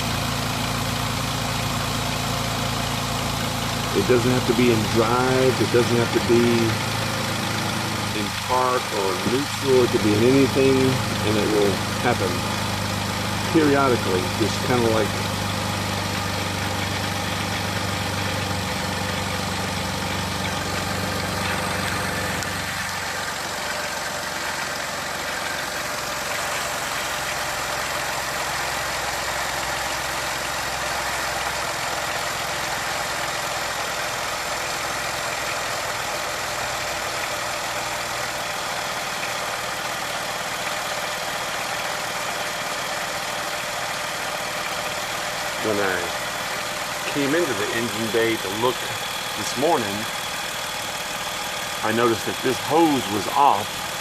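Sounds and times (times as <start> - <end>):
car engine idling: 0.0 - 54.0.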